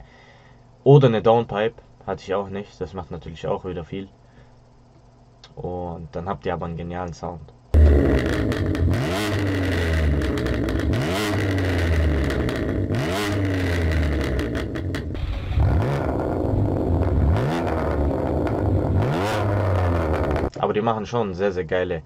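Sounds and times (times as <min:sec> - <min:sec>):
car engine revving: 0:07.8 - 0:20.5
exhaust crackles: 0:07.8 - 0:20.5.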